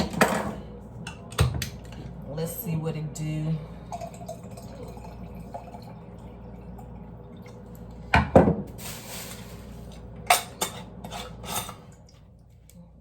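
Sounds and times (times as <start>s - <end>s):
juice pouring: 3.7s - 8.1s.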